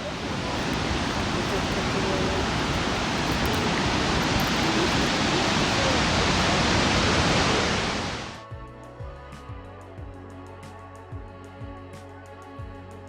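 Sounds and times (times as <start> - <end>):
waterfall rushing: 0.0 - 8.4.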